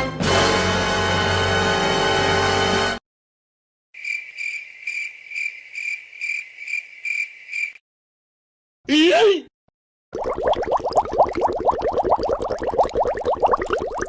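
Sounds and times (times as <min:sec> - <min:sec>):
music: 0:00.0 - 0:03.0
crickets chirping: 0:04.0 - 0:07.8.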